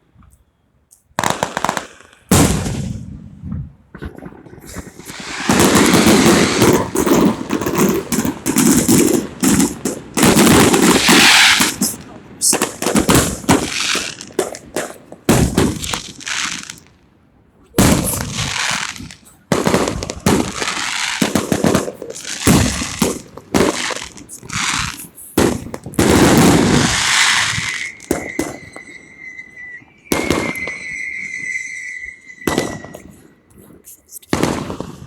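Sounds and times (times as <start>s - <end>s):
loud bangs and cracks: 5.0s - 16.8s, 17.8s - 29.0s
high ringing tone: 27.5s - 33.5s.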